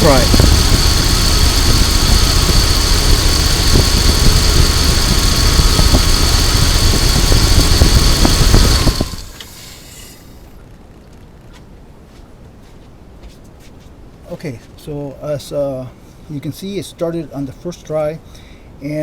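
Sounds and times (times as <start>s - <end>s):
car engine idling: 0.0s - 10.0s.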